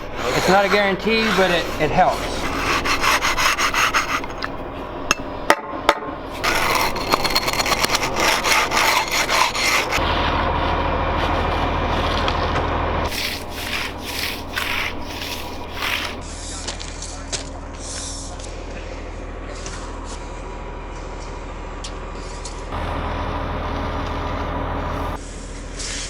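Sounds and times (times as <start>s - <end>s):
hand tool scraping wet concrete: 0.0s - 5.3s, 6.3s - 10.4s, 13.1s - 16.2s
low hum: 0.0s - 5.5s, 22.7s - 25.2s.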